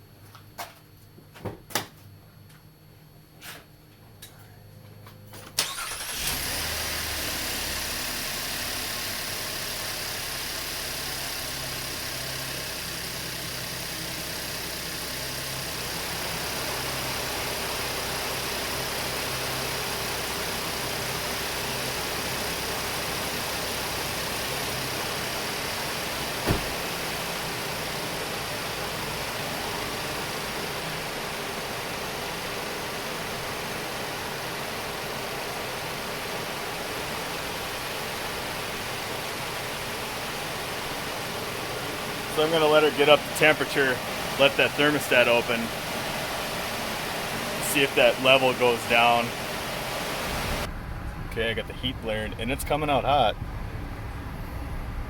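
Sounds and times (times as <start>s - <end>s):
car engine cranking and idling: 5.5s - 55.0s
sharp knock: 26.4s - 26.8s.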